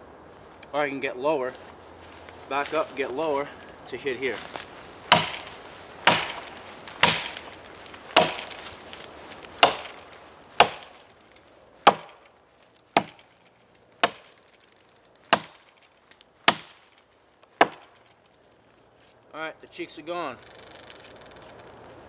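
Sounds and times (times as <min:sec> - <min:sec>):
axe chopping log: 0:05.1 - 0:08.8, 0:09.5 - 0:11.1, 0:11.8 - 0:12.3, 0:13.0 - 0:13.3, 0:14.0 - 0:14.5, 0:15.2 - 0:18.1.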